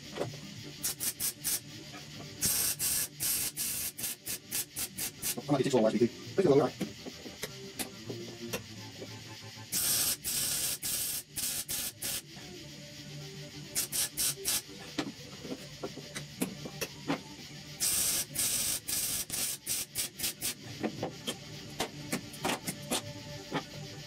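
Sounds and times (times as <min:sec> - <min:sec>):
welding sputtering on sheet metal: 0:00.8 - 0:01.7, 0:02.4 - 0:06.6, 0:09.7 - 0:12.3, 0:13.7 - 0:14.7, 0:17.8 - 0:20.6.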